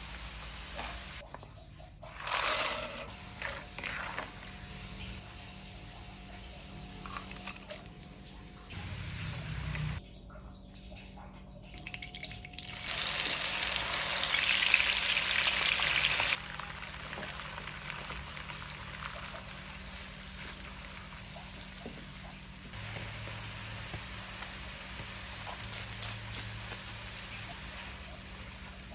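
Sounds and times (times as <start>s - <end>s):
food sizzling in hot oil: 0.0s - 1.2s, 12.5s - 21.8s, 22.6s - 28.9s.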